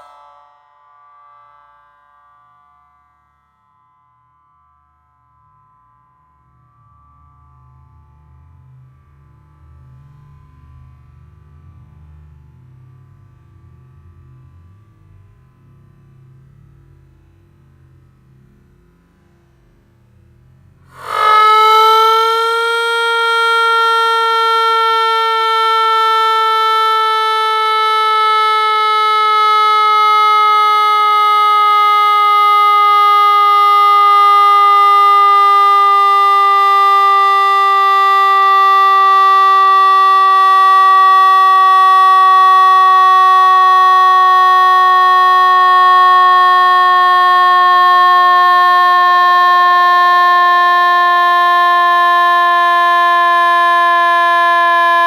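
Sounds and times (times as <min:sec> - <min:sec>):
electronic siren horn-like tone: 0:00.0 - 0:00.5, 0:20.9 - 0:55.0.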